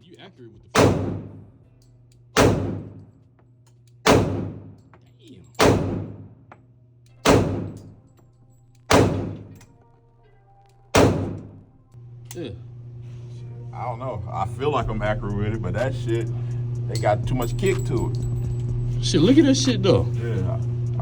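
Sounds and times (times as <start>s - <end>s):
pistol shots echoing: 0.8s - 1.5s, 2.4s - 3.1s, 4.1s - 4.8s, 5.6s - 6.4s, 7.2s - 8.0s, 8.9s - 9.6s, 11.0s - 11.6s.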